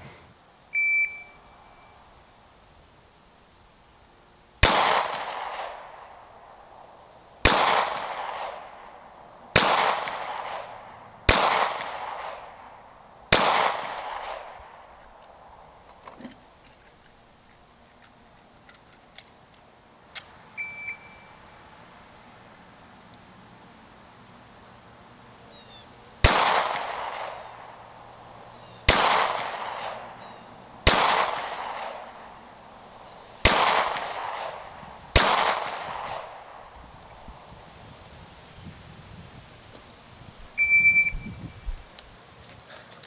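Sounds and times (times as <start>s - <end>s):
shot timer beep: 0.8s - 1.4s, 20.6s - 21.3s, 40.6s - 41.3s.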